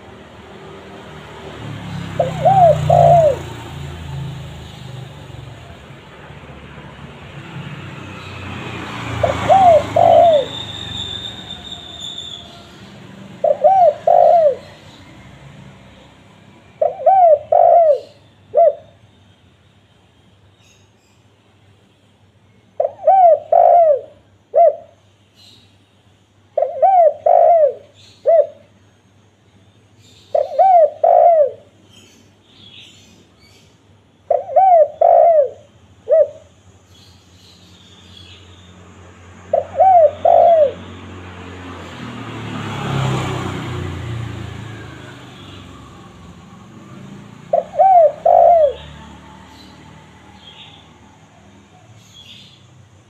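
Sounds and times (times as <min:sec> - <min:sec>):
dove cooing: 0:02.0 - 0:03.8, 0:09.2 - 0:10.6, 0:13.3 - 0:14.9, 0:16.8 - 0:18.9, 0:22.8 - 0:24.9, 0:26.6 - 0:28.6, 0:30.3 - 0:31.7, 0:34.3 - 0:36.5, 0:39.5 - 0:41.0, 0:47.2 - 0:49.7
small birds chirping: 0:08.0 - 0:19.0, 0:24.6 - 0:28.7, 0:30.0 - 0:41.0, 0:42.9 - 0:53.0.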